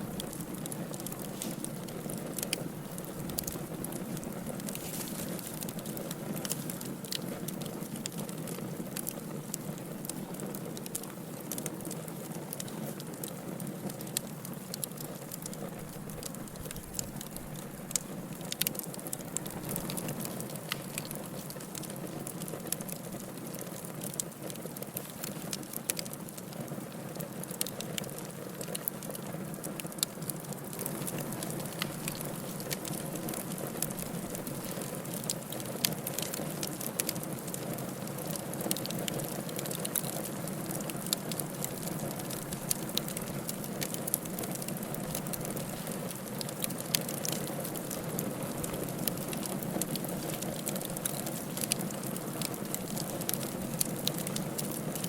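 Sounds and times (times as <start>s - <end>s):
flames hissing: 0.0s - 8.8s
firewood crackling and popping: 0.0s - 55.0s.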